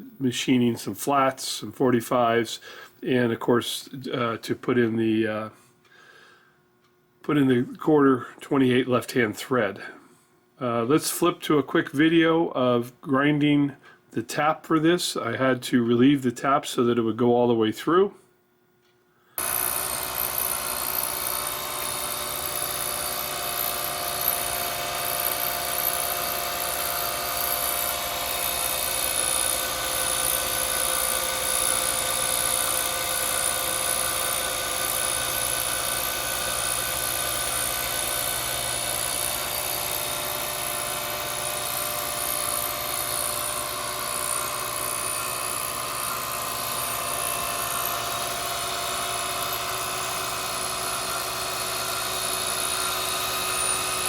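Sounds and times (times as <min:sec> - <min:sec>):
grinder whining: 0:19.4 - 0:54.0.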